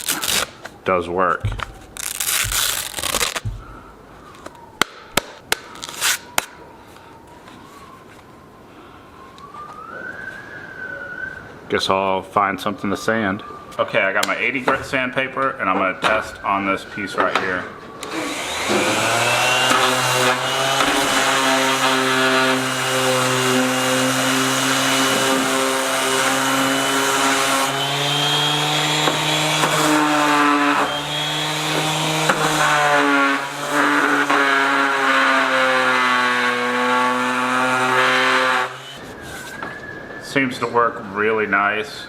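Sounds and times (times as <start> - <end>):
orbital sander sanding wood: 18.1 - 39.0.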